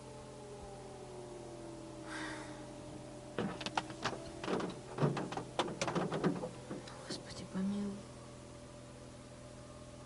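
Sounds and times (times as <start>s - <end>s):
distant air-raid siren winding down: 0.0s - 10.0s
clicks and knocks in car: 3.4s - 7.2s.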